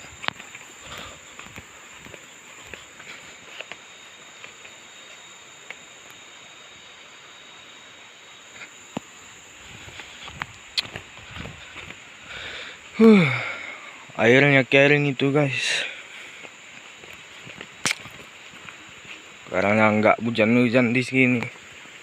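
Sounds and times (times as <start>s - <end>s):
footsteps: 0.0s - 5.2s, 9.6s - 12.1s, 16.3s - 19.6s
insects droning: 0.0s - 22.0s.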